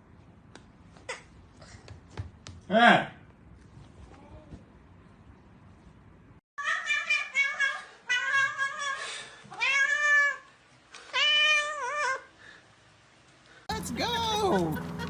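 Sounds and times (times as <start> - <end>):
cat meowing: 6.6 - 10.4.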